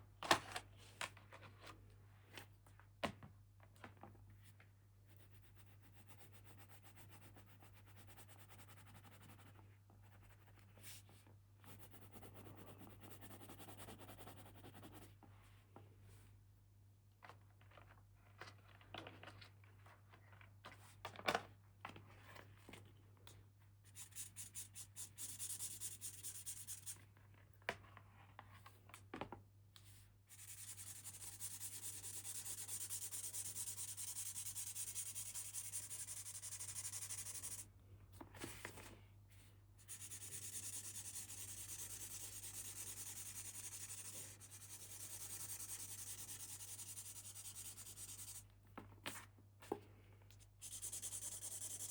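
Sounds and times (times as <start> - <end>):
quick scratching strokes: 30.3 - 37.6, 39.9 - 48.4, 50.6 - 51.9
rubbing and scraping on packaging: 30.3 - 37.6, 39.8 - 48.4, 50.5 - 51.9.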